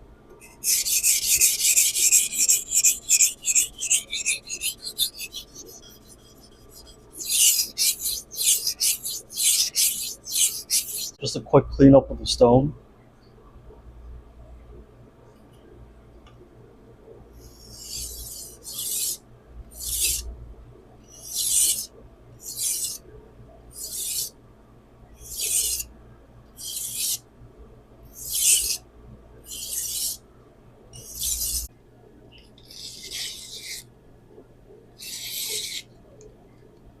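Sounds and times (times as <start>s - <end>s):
blade rasping on whetstone: 0.4s - 11.2s, 17.4s - 19.2s, 19.8s - 20.2s, 21.1s - 23.0s, 23.8s - 24.3s, 25.2s - 25.8s, 26.6s - 27.2s, 28.2s - 28.8s, 29.5s - 30.2s, 31.0s - 31.7s, 32.7s - 33.8s, 35.0s - 35.8s.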